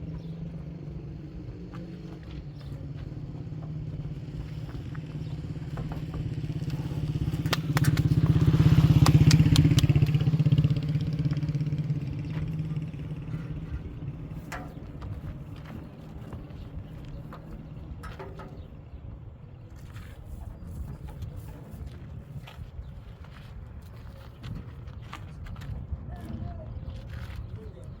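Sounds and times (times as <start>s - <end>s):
motorcycle engine running: 0.0s - 19.3s.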